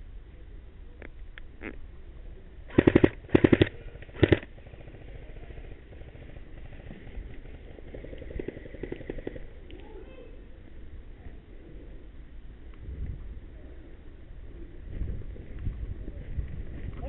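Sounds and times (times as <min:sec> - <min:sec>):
airsoft gun rapid-fire bursts: 0:02.7 - 0:05.2.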